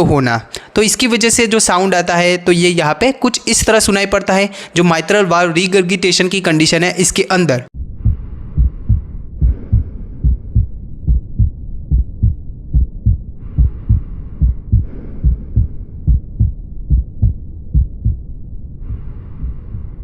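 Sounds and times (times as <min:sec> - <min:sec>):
heart murmur: 0:07.8 - 0:20.0
heartbeat lub-dub: 0:07.8 - 0:20.0.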